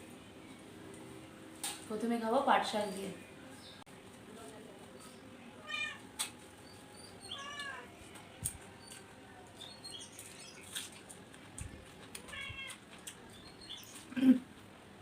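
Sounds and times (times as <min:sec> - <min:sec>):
cat meowing: 0:05.6 - 0:06.0, 0:07.3 - 0:07.9, 0:12.2 - 0:12.8.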